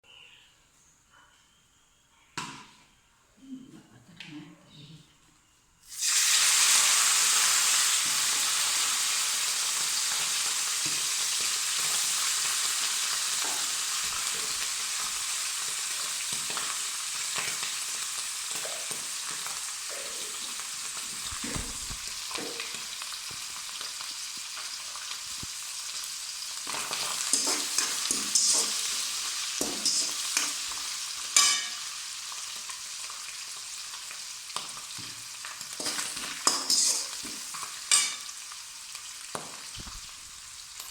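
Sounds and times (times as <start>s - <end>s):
hot oil sizzling in a pan: 5.8s - 40.9s
stirring knocks and scrapes in pan: 26.7s - 29.0s, 29.6s - 30.6s, 35.8s - 38.2s.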